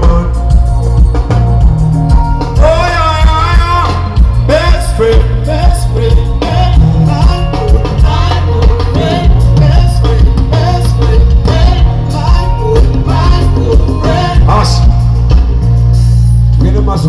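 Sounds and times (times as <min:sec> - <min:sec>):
heavy bass line: 0:00.0 - 0:17.0
live band music: 0:00.0 - 0:17.0
person singing: 0:02.6 - 0:15.2.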